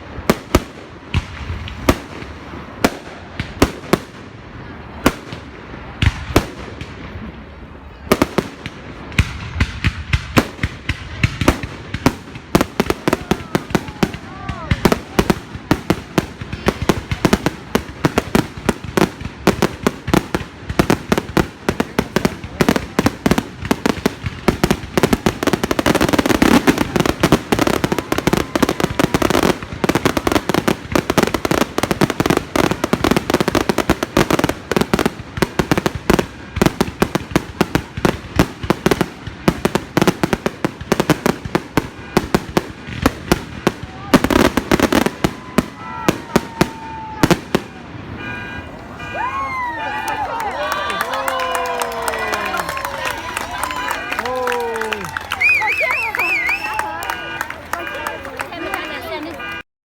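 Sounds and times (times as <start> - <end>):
fireworks bangs and crackles: 0.0 - 59.6.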